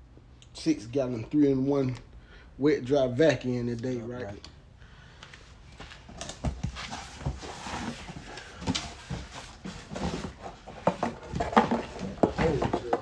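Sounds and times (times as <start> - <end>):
box knocking and clunking: 6.2 - 13.0.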